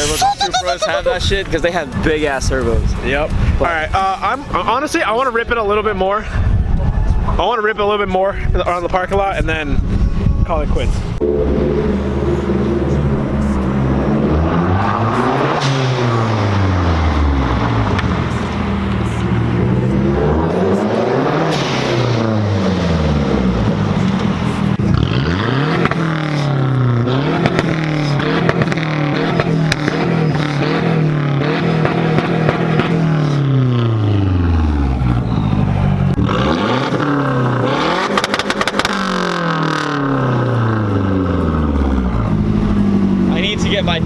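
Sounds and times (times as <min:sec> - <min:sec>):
car engine revving: 0:11.0 - 0:44.0.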